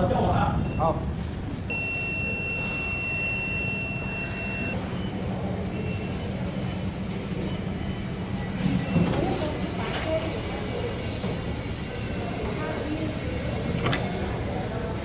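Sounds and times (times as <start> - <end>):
low steady rumble: 0.0 - 9.0
lower electrical tone: 0.0 - 9.3
high-pitched furnace whine: 0.0 - 15.0.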